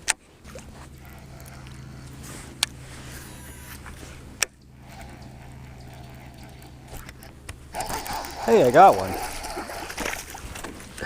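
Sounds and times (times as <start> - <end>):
steady low hum: 0.1 - 11.0
sharp clicks: 3.8 - 10.2.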